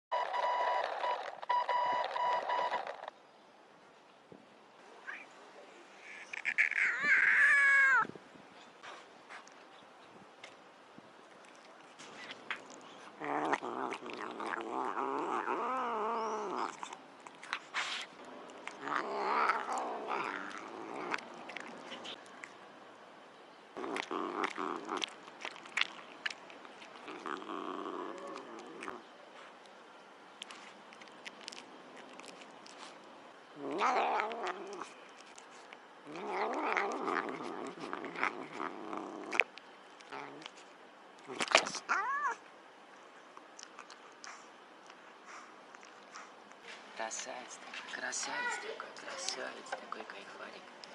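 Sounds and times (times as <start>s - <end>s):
cat growl-yowling: 6.4s - 8.1s, 13.2s - 17.0s, 18.6s - 22.1s, 23.8s - 25.1s, 27.0s - 29.0s, 33.6s - 34.9s, 36.0s - 39.4s, 40.0s - 40.5s, 41.2s - 42.4s
cat yowling: 6.4s - 8.1s, 41.9s - 42.4s.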